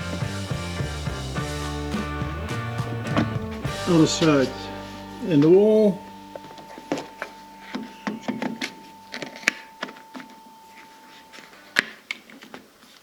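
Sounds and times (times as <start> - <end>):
faint high tone: 3.8 - 12.0.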